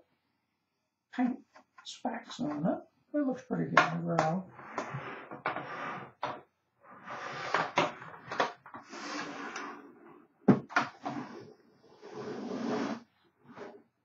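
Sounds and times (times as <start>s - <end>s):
case scraping and rubbing: 4.4s - 13.9s.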